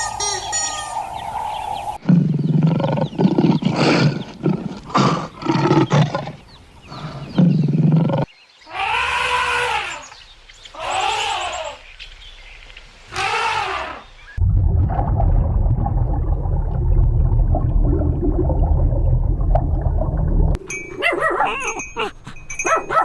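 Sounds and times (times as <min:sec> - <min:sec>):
animal growling calls: 0:01.1 - 0:10.1.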